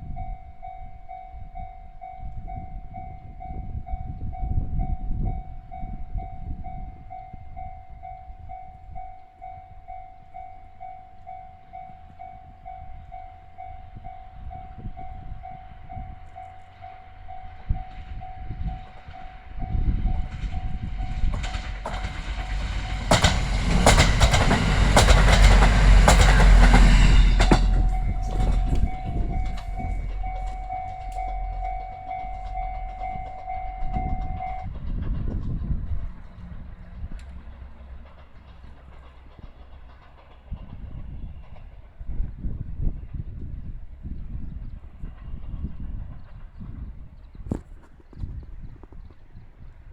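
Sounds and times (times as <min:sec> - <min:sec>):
train rumble: 0:00.0 - 0:49.9
level-crossing alarm ringing: 0:06.8 - 0:34.7
wheels clicking over rail joints: 0:18.9 - 0:41.0.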